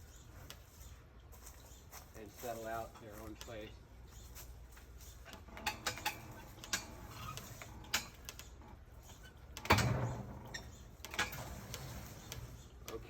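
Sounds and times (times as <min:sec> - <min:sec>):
metallic clicks and knocks: 0:05.3 - 0:08.6.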